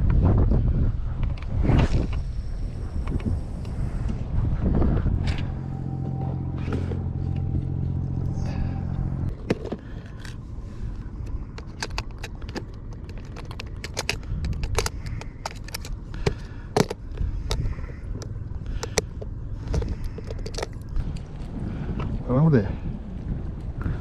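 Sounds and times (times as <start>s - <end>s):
engine running: 0.0s - 24.0s
sharp clicks and light rattles: 9.3s - 22.1s.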